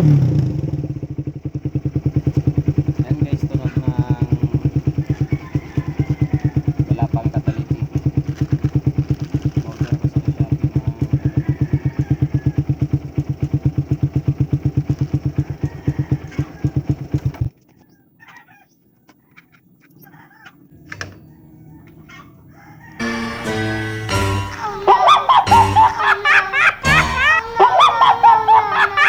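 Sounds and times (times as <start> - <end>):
motorcycle engine idling: 0.0 - 18.0, 20.6 - 29.0
chickens clucking: 3.6 - 7.1, 10.2 - 12.7, 15.3 - 29.0.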